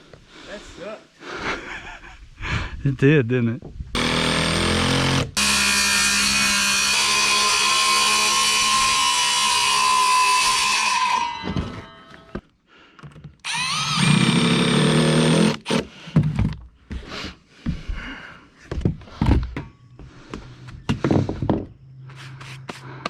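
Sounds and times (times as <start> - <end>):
power drill spinning up: 13.4 - 15.8.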